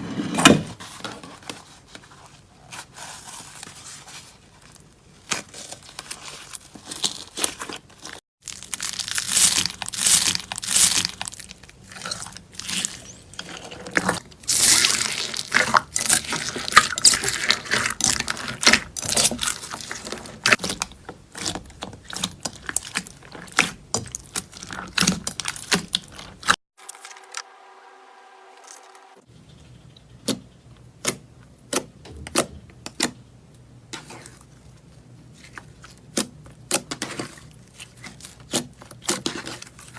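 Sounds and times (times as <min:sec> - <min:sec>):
slime crackling and tearing: 0:05.2 - 0:13.2, 0:14.0 - 0:26.6.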